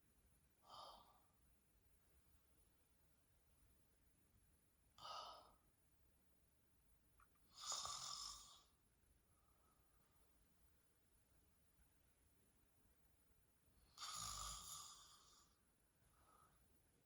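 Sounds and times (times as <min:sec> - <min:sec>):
woman snoring softly: 0:07.5 - 0:08.8, 0:13.9 - 0:15.6.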